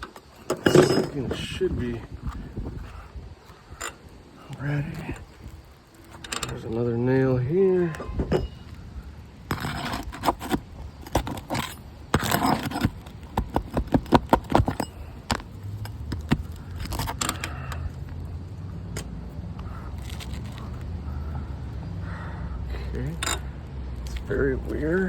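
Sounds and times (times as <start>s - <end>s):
metal tool scraping roof shingle: 0.0s - 2.5s, 9.4s - 17.6s
low steady rumble: 0.0s - 13.7s, 14.8s - 25.0s.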